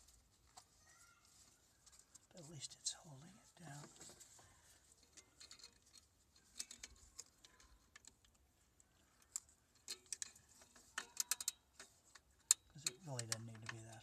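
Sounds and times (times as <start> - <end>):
small parts clicking and tapping: 4.9 - 14.0.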